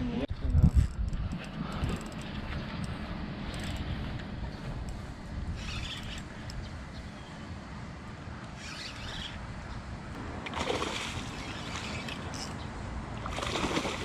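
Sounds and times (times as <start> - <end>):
wind rumbling on microphone: 0.0 - 7.5
water splashing: 10.2 - 14.0.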